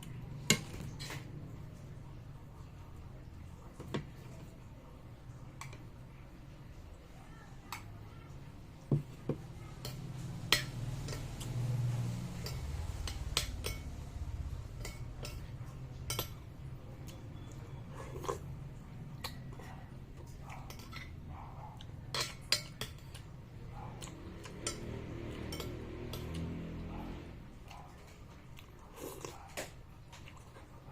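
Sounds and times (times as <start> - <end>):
cutlery clinking against bowl: 8.9 - 11.6, 12.3 - 14.0, 14.7 - 18.4, 20.2 - 21.2, 21.8 - 23.3, 24.0 - 26.6.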